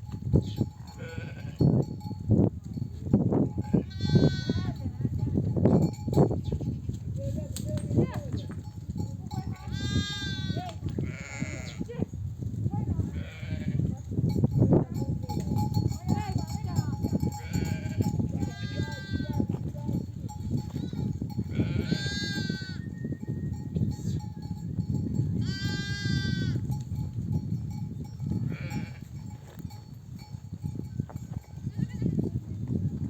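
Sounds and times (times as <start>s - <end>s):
sheep bleating: 1.0s - 1.7s, 3.7s - 4.8s, 9.7s - 11.8s, 13.1s - 13.8s, 17.4s - 19.4s, 20.8s - 22.8s, 25.4s - 26.6s, 28.5s - 29.1s.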